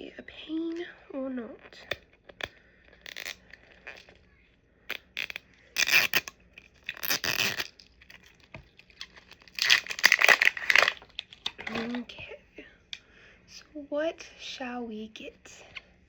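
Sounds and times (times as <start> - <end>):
plastic packaging clicks: 4.9 - 12.0
plastic packaging rustling and tearing: 4.9 - 12.1.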